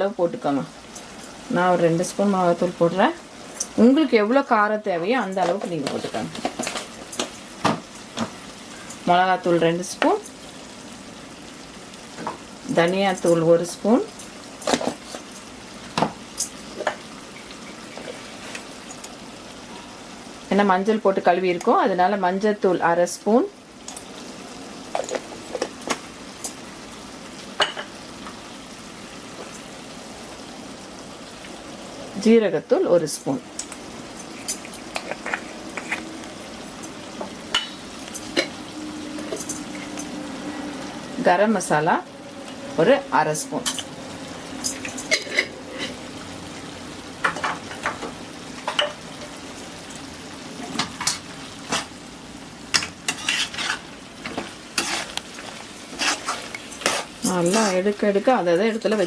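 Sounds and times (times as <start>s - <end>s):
liver sizzling in oil in a pan: 0.0s - 59.0s
spatula scraping and clinking pan: 52.8s - 55.2s, 55.9s - 57.8s.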